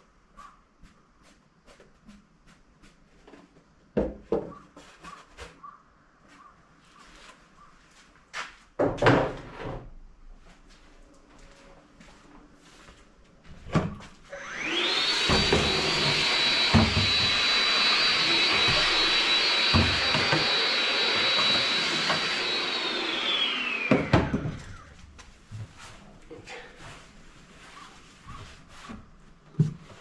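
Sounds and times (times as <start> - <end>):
vacuum cleaner motor whining: 14.3 - 25.1.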